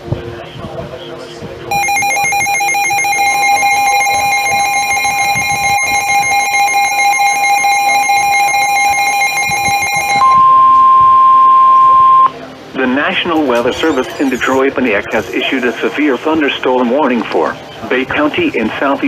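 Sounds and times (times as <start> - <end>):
electronic alert tones: 1.7 - 12.3.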